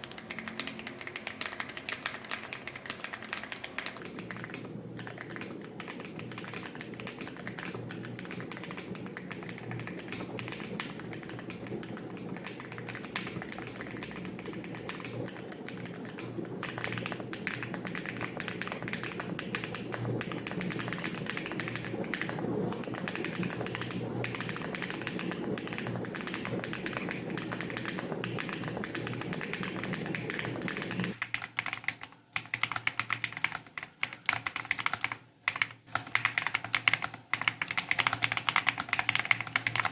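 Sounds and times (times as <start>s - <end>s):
low steady hum: 0.0s - 31.5s
mechanical keyboard typing: 0.0s - 39.9s.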